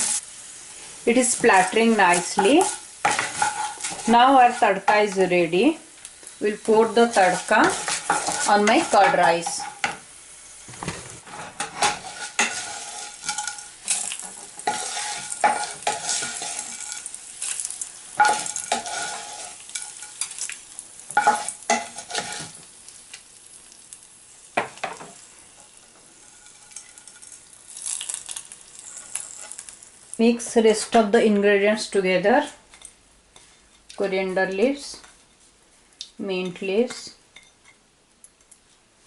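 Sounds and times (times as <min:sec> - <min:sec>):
hot oil sizzling and crackling: 0:00.0 - 0:31.9
spoon scraping and stirring: 0:01.5 - 0:04.8, 0:07.0 - 0:09.9, 0:11.2 - 0:22.6.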